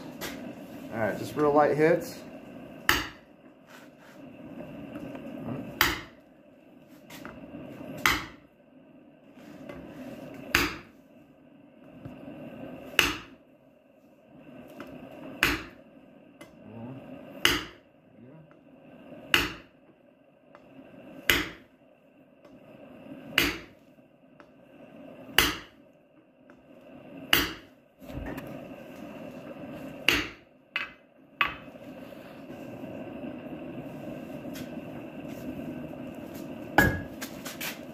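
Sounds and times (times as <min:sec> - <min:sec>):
hammer striking steel on anvil: 0:02.9 - 0:03.2, 0:05.8 - 0:06.1, 0:08.0 - 0:08.4, 0:10.5 - 0:10.9, 0:13.0 - 0:13.3, 0:15.4 - 0:15.7, 0:17.4 - 0:17.8, 0:19.3 - 0:19.6, 0:21.3 - 0:21.6, 0:23.4 - 0:23.7, 0:25.4 - 0:25.7, 0:27.3 - 0:27.7, 0:30.1 - 0:31.6, 0:36.8 - 0:37.1.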